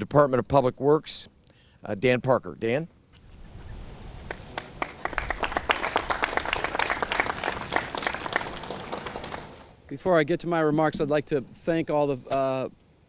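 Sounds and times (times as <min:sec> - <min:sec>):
crowd applauding: 0:04.2 - 0:09.8.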